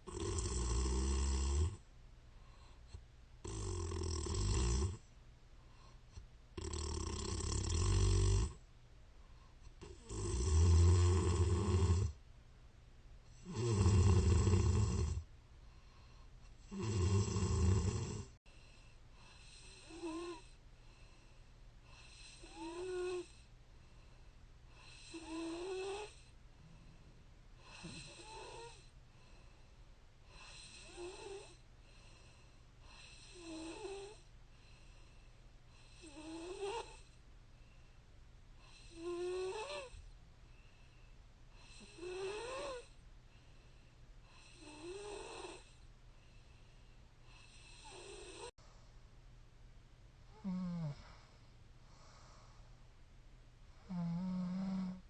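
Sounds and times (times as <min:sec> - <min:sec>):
woman snoring: 0:00.0 - 0:01.8, 0:03.4 - 0:05.0, 0:06.6 - 0:08.6, 0:09.8 - 0:12.2, 0:13.4 - 0:15.2, 0:16.7 - 0:18.4, 0:19.2 - 0:20.6, 0:21.9 - 0:23.5, 0:24.8 - 0:26.3, 0:27.6 - 0:28.9, 0:30.3 - 0:31.6, 0:32.9 - 0:34.3, 0:35.8 - 0:37.1, 0:38.6 - 0:40.1, 0:41.6 - 0:42.9, 0:44.3 - 0:45.8, 0:47.3 - 0:48.6, 0:50.3 - 0:51.2, 0:53.8 - 0:55.0.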